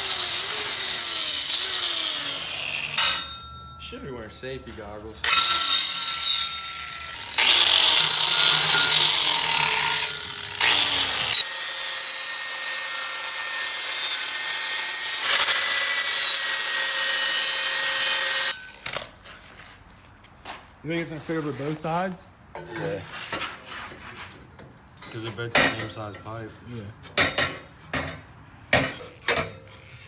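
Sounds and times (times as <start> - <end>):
power tool cutting steel pipe: 0.0 - 3.4, 5.2 - 18.8.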